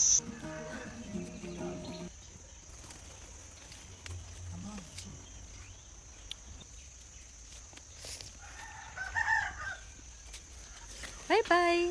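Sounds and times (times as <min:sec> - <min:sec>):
rooster crowing: 0:00.2 - 0:01.5, 0:08.4 - 0:10.0.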